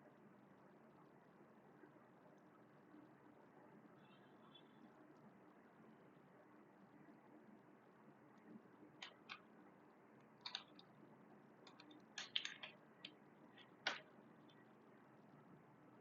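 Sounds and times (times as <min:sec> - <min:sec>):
faint room hiss: 0:00.0 - 0:16.0
mouse and keyboard clicks: 0:09.0 - 0:09.5, 0:10.2 - 0:10.9, 0:11.6 - 0:14.6.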